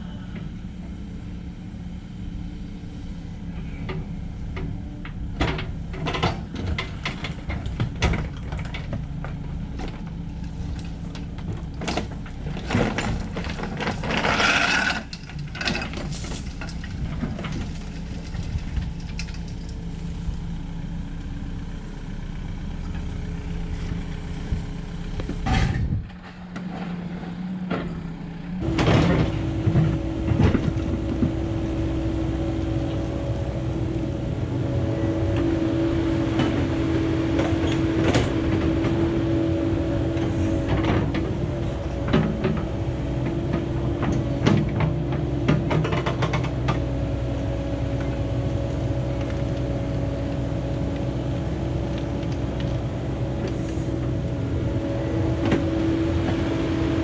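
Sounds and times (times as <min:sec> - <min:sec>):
excavator engine hum: 0:00.0 - 0:57.0.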